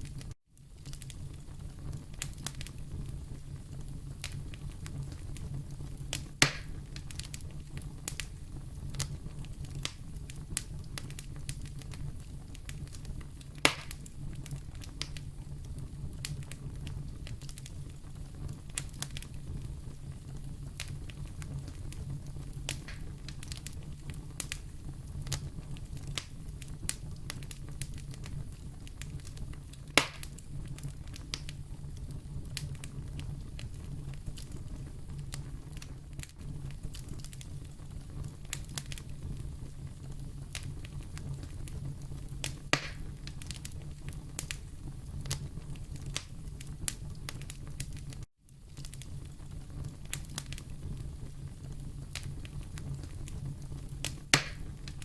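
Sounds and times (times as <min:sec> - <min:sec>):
fire crackling and popping: 0:00.0 - 0:55.0
fire rumbling: 0:00.0 - 0:55.0.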